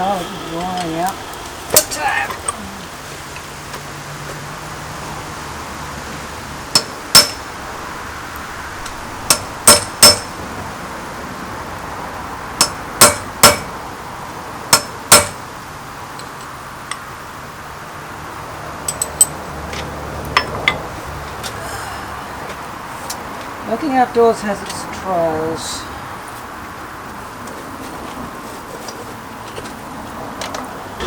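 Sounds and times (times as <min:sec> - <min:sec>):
hammer striking metal on anvil: 0:06.7 - 0:07.5, 0:09.3 - 0:10.4, 0:12.6 - 0:13.7, 0:14.7 - 0:15.4.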